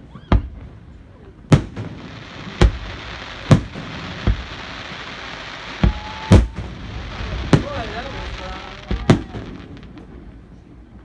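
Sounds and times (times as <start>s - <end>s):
steady hiss: 0.8s - 11.0s
fireworks shells bursting: 1.6s - 10.3s.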